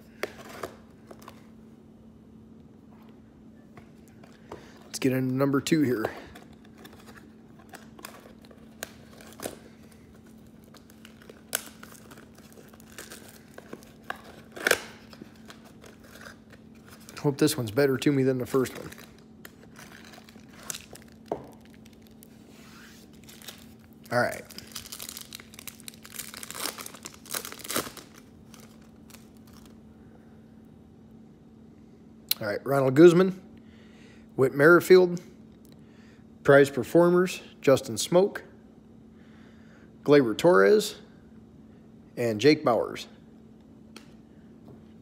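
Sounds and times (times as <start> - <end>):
wrappers crinkling and tearing: 6.0 - 29.8
sharp packaging snaps: 10.6 - 16.6.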